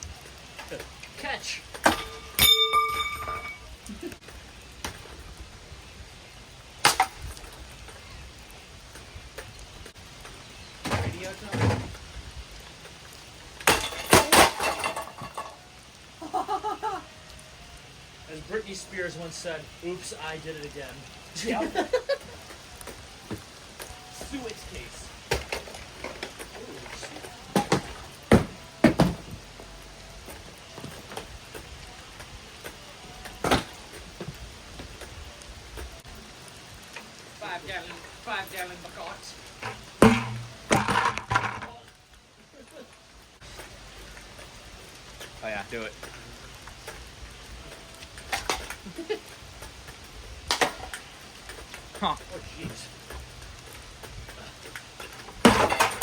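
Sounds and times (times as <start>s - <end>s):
hard knocks of objects being struck: 27.6s - 29.3s, 39.7s - 41.6s
hard objects knocking and clattering: 39.6s - 41.8s, 54.7s - 56.0s.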